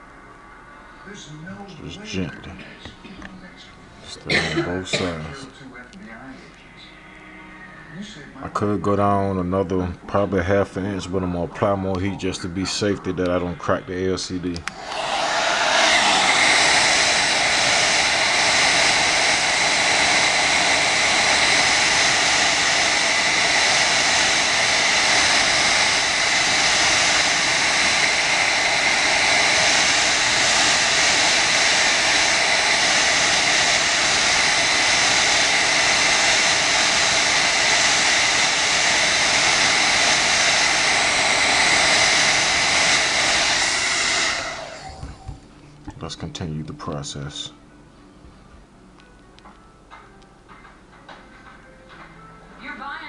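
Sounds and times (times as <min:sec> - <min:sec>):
hair dryer blowing: 0:14.4 - 0:45.4.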